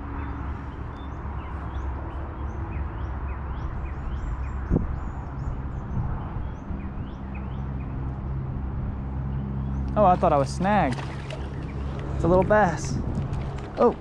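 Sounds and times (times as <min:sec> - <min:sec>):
small birds chirping: 0:09.3 - 0:13.0.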